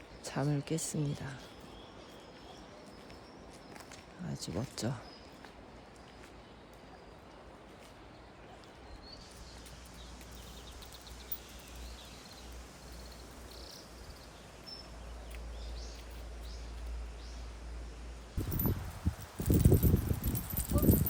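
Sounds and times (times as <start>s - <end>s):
small birds chirping: 18.4s - 21.0s.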